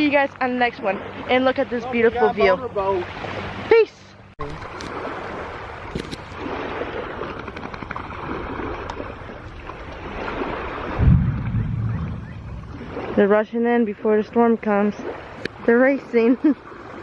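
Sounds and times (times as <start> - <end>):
water washing at shore: 0.0 - 17.0
wind on microphone: 5.0 - 13.3.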